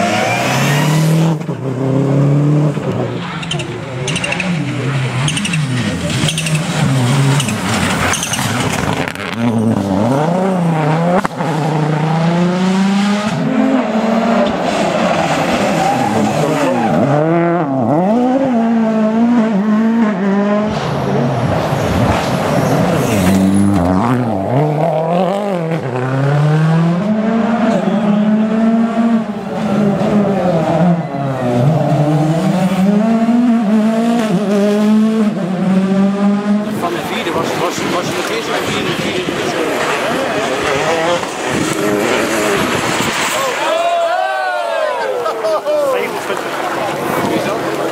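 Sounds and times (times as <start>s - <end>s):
rally car engine revving: 0.0s - 44.9s
tyres squealing: 3.2s - 8.8s.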